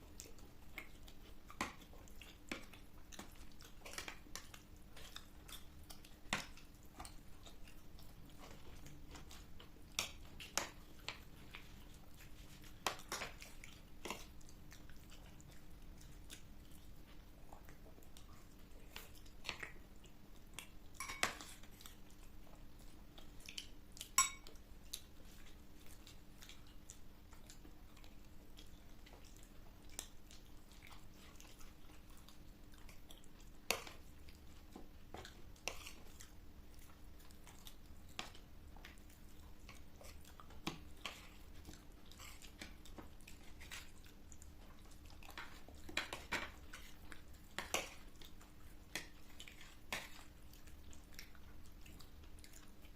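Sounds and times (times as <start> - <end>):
chewing crisp food: 0.0 - 52.9
cutlery clinking on plates: 21.0 - 21.6, 24.2 - 24.5.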